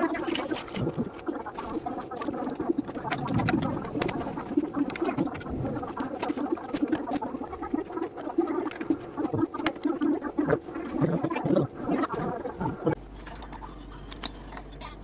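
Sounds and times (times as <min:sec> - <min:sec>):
plastic blocks clicking and rattling: 0:00.0 - 0:11.6.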